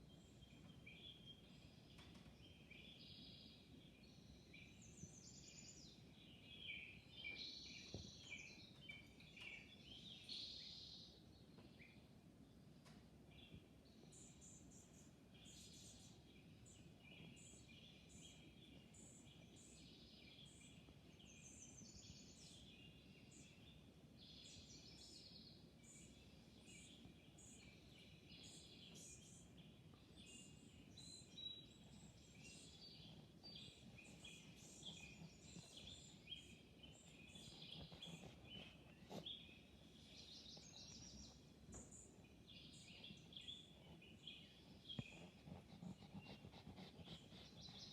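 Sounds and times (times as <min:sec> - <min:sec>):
songbirds chirping: 0:00.0 - 0:47.9.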